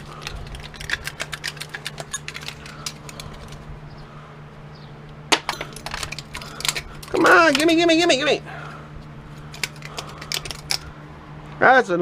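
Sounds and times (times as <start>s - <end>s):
small parts clicking and tapping: 0.0s - 3.7s, 5.3s - 8.2s, 9.5s - 10.9s
steady low hum: 0.0s - 11.7s.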